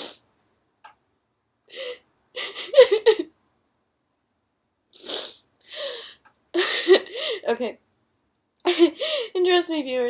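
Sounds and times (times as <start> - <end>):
woman crying: 1.8 - 3.3, 6.6 - 7.5.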